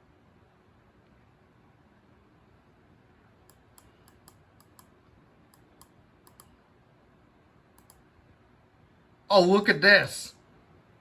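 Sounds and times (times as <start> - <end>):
computer mouse clicks: 3.4 - 6.6, 7.7 - 8.1.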